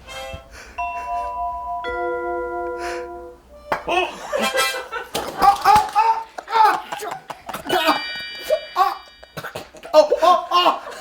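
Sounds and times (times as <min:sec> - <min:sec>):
harmonica chord: 0:00.0 - 0:05.0.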